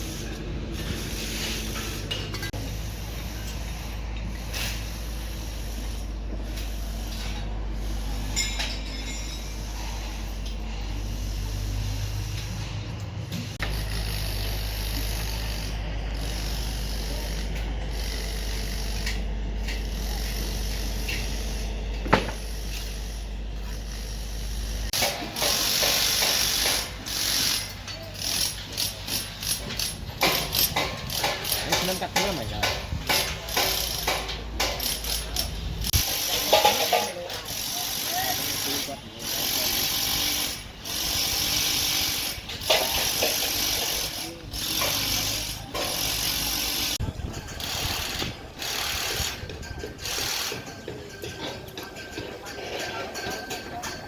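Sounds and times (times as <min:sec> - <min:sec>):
excavator engine hum: 0:00.0 - 0:25.0.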